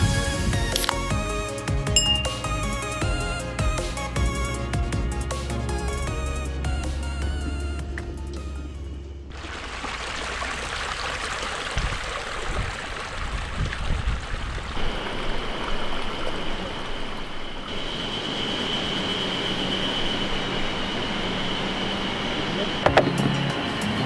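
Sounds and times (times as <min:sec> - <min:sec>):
faint high-pitched tone: 0:02.0 - 0:02.6
flowing water rushing: 0:09.3 - 0:24.0.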